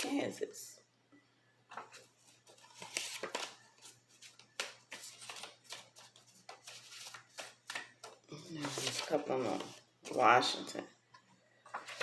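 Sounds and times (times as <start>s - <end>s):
cards being shuffled: 1.7s - 10.2s, 11.7s - 12.0s.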